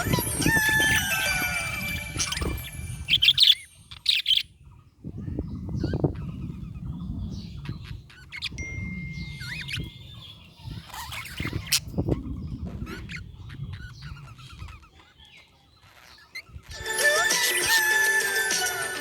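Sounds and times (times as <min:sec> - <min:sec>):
budgerigars chirping: 0:00.0 - 0:04.5, 0:05.6 - 0:08.6, 0:09.2 - 0:16.8.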